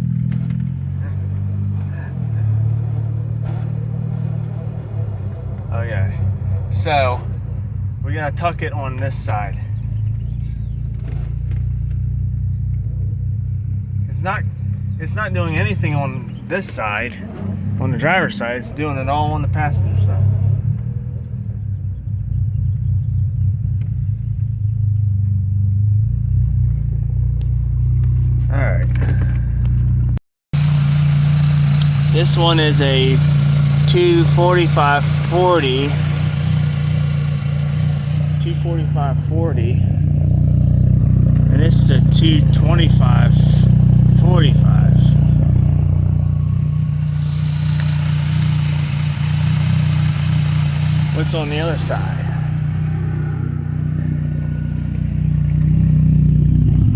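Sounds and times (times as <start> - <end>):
car engine idling: 0.0 - 17.2, 23.8 - 56.8
broad hiss: 30.6 - 39.1, 46.2 - 52.8.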